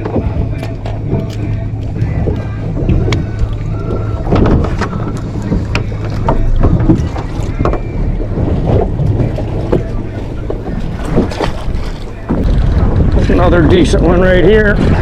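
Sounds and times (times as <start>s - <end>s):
water slapping against hull: 0.0s - 15.0s
wind buffeting microphone: 0.0s - 15.0s
steady low hum: 7.0s - 12.6s.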